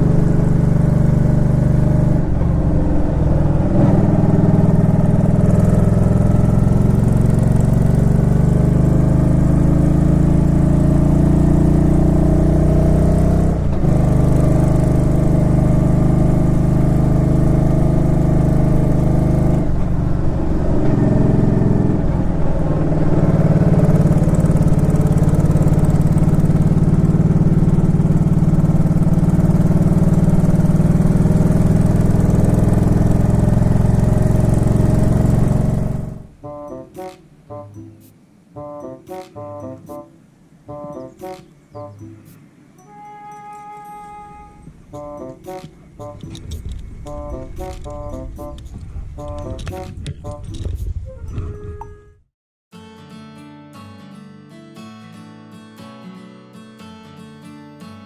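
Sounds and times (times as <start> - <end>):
motorcycle engine running: 0.0 - 36.4, 45.0 - 50.9.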